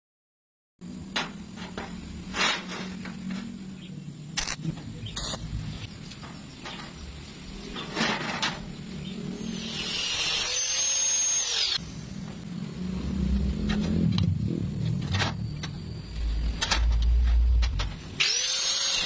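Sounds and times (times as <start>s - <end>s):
angle grinder cutting steel: 9.4s - 11.8s, 18.2s - 19.0s.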